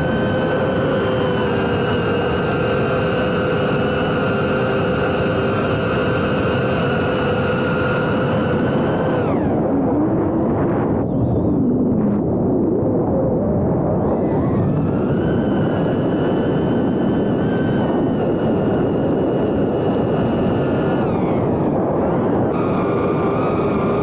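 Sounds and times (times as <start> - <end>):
drone motors whining: 0.0 - 12.5, 13.8 - 24.0
rushing air noise: 14.4 - 24.0.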